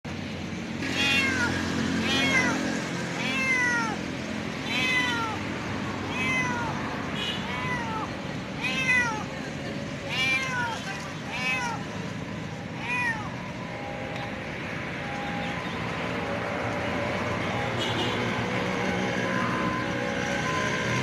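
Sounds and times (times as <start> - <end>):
cat meowing: 0.9 - 9.4, 10.1 - 11.9, 12.8 - 13.4.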